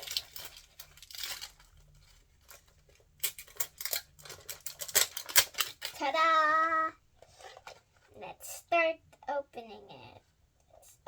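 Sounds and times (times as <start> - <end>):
packaging torn and crinkled: 3.3 - 6.0.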